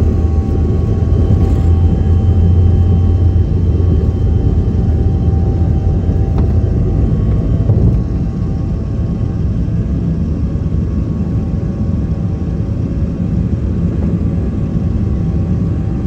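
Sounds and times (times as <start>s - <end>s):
faint whining tones: 0.0s - 16.0s
jet engine cabin rumble: 0.0s - 16.0s.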